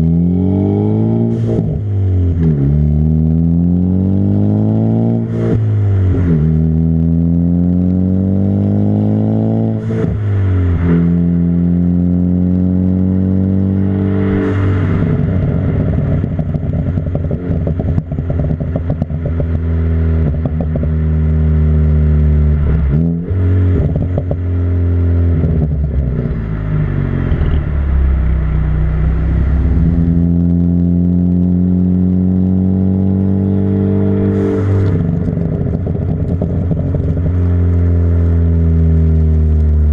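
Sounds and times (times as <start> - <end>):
car engine accelerating through gears: 0.0 - 39.9
exhaust crackles and pops: 15.0 - 21.1, 22.5 - 24.6, 25.3 - 30.4, 34.4 - 39.9.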